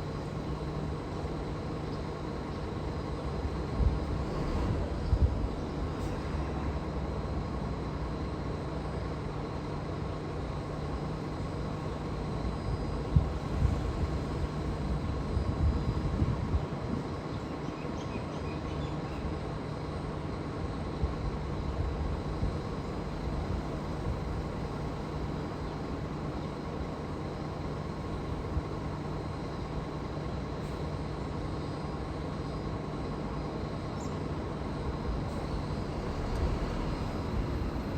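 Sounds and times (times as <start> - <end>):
steady low hum: 0.0 - 17.7, 19.2 - 37.9
electric train rumble: 0.0 - 37.9.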